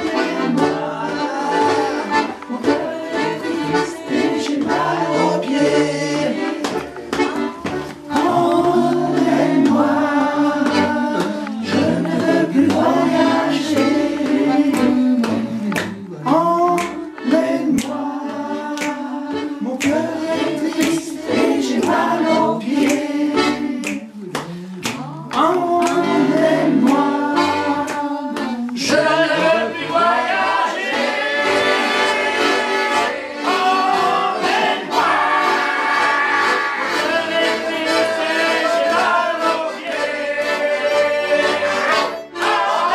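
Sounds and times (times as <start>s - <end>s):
group of voices singing: 0.0s - 42.9s
hand claps: 0.3s - 19.1s, 19.7s - 29.4s, 36.6s - 40.2s.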